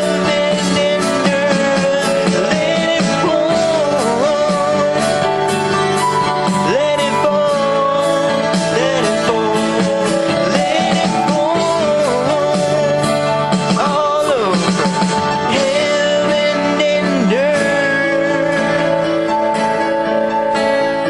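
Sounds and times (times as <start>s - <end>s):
bending lead guitar melody: 0.0s - 21.0s
rock band instrumental: 0.0s - 21.0s.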